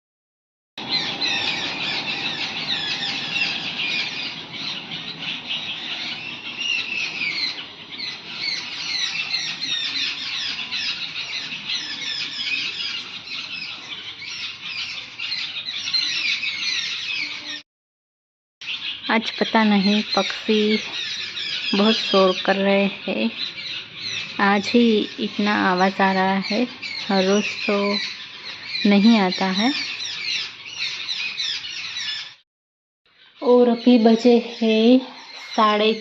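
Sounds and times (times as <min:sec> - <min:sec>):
birds chirping and squawking: 0:00.8 - 0:17.6, 0:18.6 - 0:32.4, 0:33.1 - 0:36.0.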